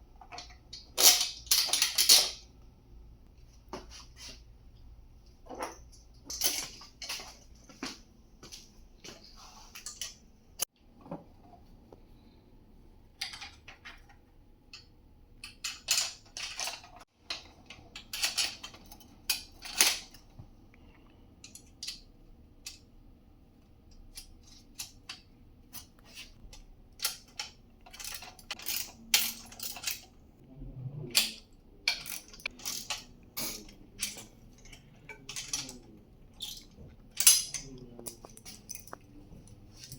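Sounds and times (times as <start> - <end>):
metal hardware clinking and rattling: 0.2 - 2.5, 5.5 - 7.8, 14.8 - 20.4, 24.0 - 30.2, 31.2 - 39.9.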